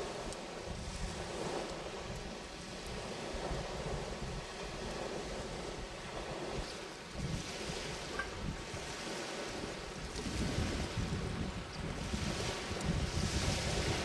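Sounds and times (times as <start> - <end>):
faint ticks: 0.0 - 3.6
wind buffeting microphone: 0.0 - 14.0.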